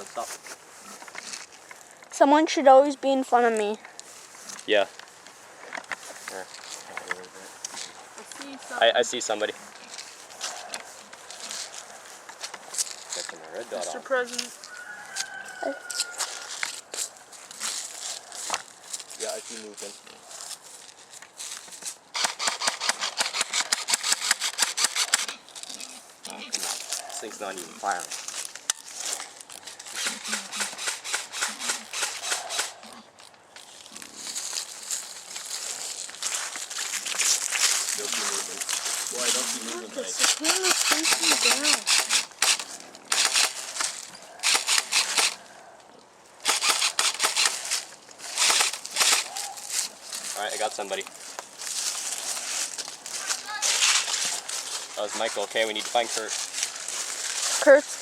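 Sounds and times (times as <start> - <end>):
electric gun rattling on full auto: 22.2 - 25.3, 30.0 - 32.7, 40.1 - 43.7, 44.4 - 45.4, 46.4 - 47.7, 48.4 - 49.3
person talking: 38.0 - 42.0
airsoft rifle firing bursts: 40.2 - 43.6, 44.4 - 45.4, 46.4 - 47.6, 48.4 - 49.3.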